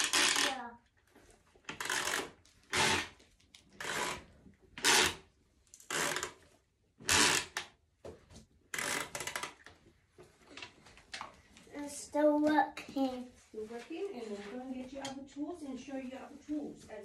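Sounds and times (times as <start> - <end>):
pull-start cord rattling zips: 0.0 - 0.7, 1.7 - 7.7, 8.7 - 9.7.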